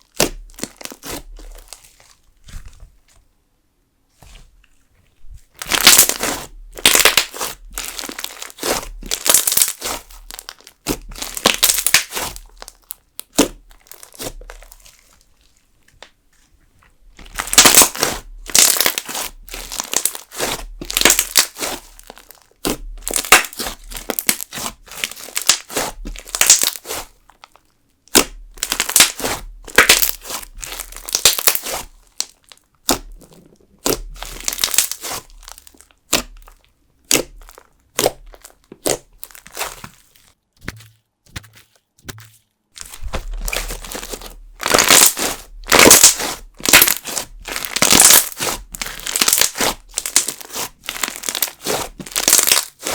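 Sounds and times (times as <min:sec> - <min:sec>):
slime crunchy clicks and pops: 0:42.8 - 0:52.9.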